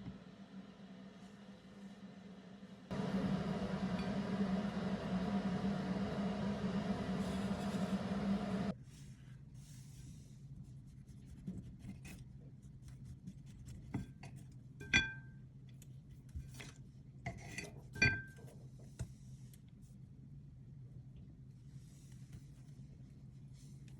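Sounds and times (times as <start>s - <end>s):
low steady hum: 0.0s - 9.4s.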